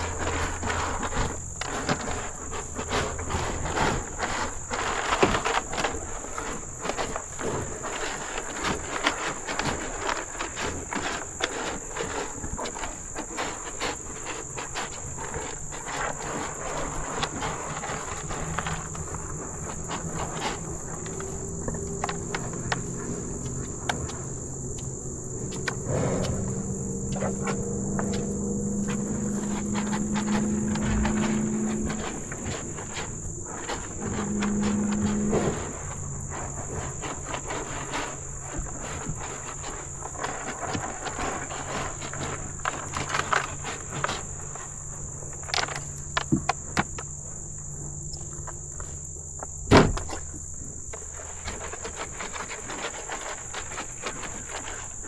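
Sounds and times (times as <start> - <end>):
insects chirring: 0.0 - 55.0
low drawn-out pitched tones: 24.7 - 32.5.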